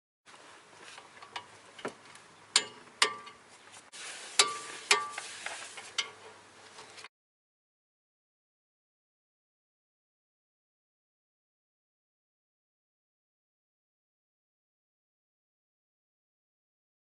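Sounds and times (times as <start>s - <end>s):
ringing metal clanks: 2.6s - 3.4s, 4.4s - 5.2s.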